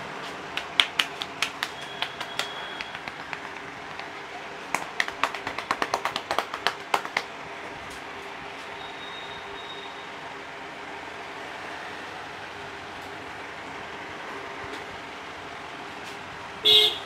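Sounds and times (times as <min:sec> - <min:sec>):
outdoor street noise: 0:00.0 - 0:17.0
hand taps and slaps on head: 0:00.6 - 0:04.1, 0:04.7 - 0:07.3.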